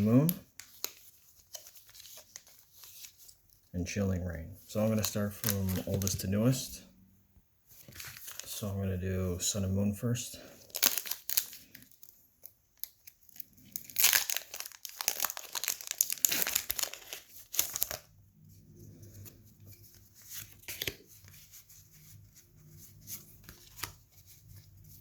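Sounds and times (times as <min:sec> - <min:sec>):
foil pack tearing and crinkling: 0:10.6 - 0:11.9, 0:12.8 - 0:18.1.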